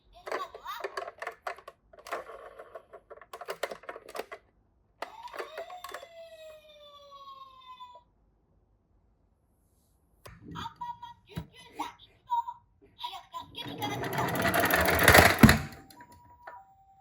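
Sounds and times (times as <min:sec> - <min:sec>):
toy cars clattering down plastic: 0:13.6 - 0:15.9
sliding toy tone: 0:13.6 - 0:16.6.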